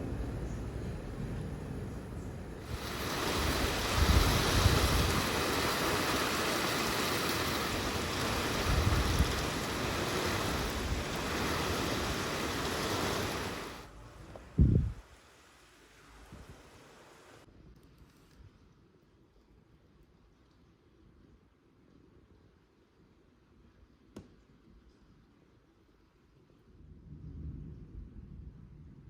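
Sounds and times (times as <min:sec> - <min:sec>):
heavy rain pouring: 0:02.6 - 0:13.9.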